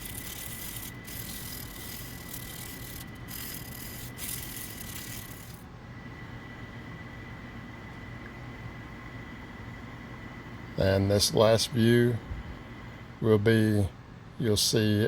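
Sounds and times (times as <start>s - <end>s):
hand sanding metal: 0.0s - 5.6s.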